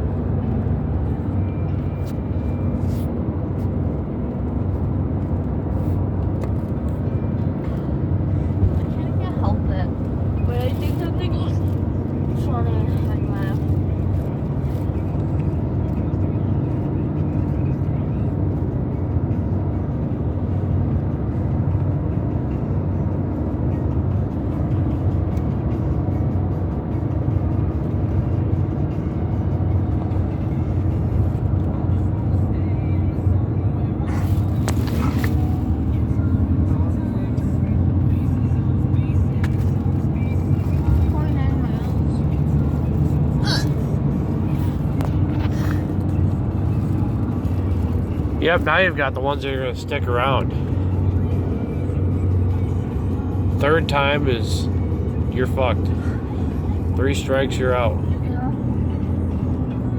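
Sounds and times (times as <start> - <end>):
car road and engine noise: 0.0 - 59.9.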